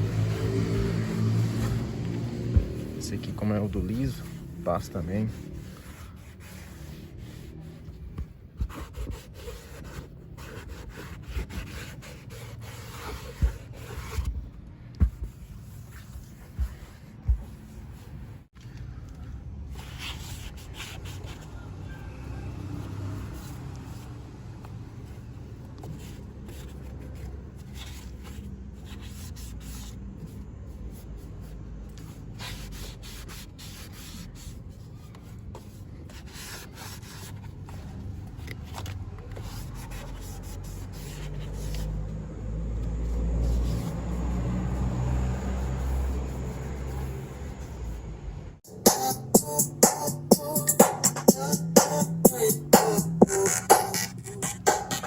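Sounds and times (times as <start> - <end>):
cloth rubbing on plastic: 0.0 - 14.4.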